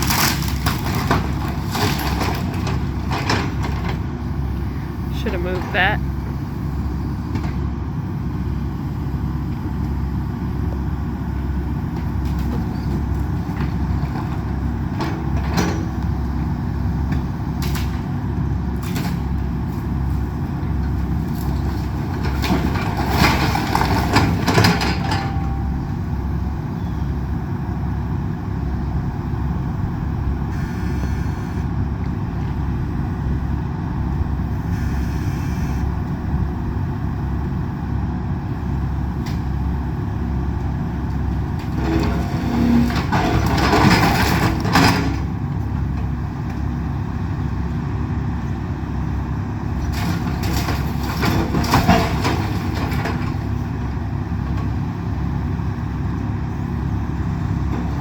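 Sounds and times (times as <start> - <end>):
wood breaking cracks: 0.0 - 2.6
excavator crunching through house: 0.0 - 35.0, 36.6 - 58.0
excavator diesel engine running: 0.0 - 58.0.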